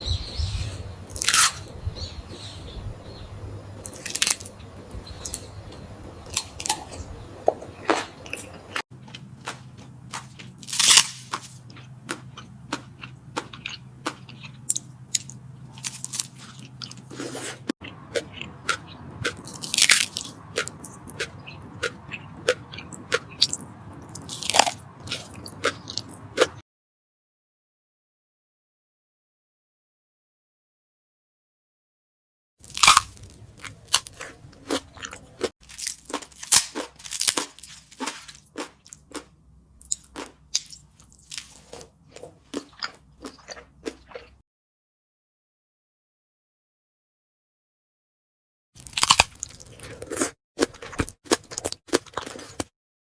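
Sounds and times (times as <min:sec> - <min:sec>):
crunchy bites: 0:00.1 - 0:02.4, 0:03.4 - 0:26.6, 0:32.6 - 0:44.4, 0:48.8 - 0:52.7.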